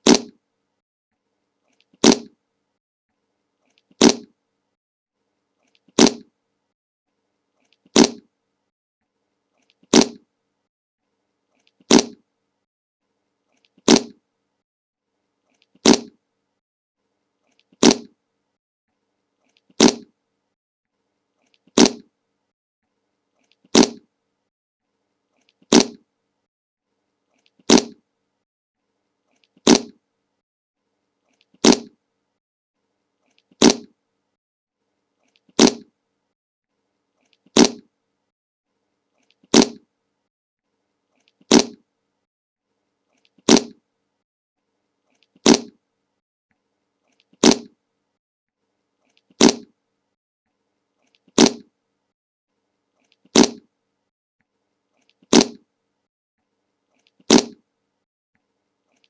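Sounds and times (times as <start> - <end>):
fart sound effect: 0.0 - 0.4, 2.0 - 2.4, 3.9 - 4.3, 6.0 - 6.3, 7.9 - 8.3, 9.9 - 10.2, 11.9 - 12.2, 13.8 - 14.2, 15.8 - 16.2, 17.8 - 18.1, 19.8 - 20.1, 21.8 - 22.1, 23.7 - 24.1, 25.7 - 26.0, 27.7 - 28.0, 29.6 - 30.0, 31.6 - 32.0, 33.6 - 33.9, 35.6 - 35.9, 37.6 - 37.9, 39.5 - 39.8, 41.5 - 41.8, 43.5 - 43.8, 45.4 - 45.7, 47.4 - 47.7, 49.4 - 49.7, 51.4 - 51.7, 53.3 - 53.6, 55.3 - 55.6, 57.3 - 57.6.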